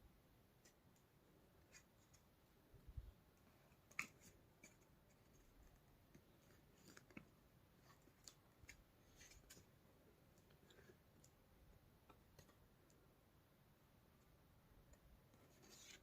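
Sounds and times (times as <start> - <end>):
faint small clicks and taps: 10.3 - 13.0.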